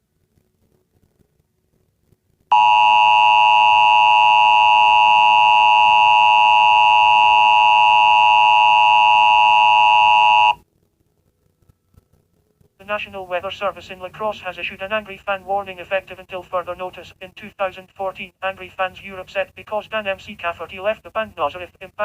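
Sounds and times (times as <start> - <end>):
two-tone alarm tone: 2.5 - 10.6.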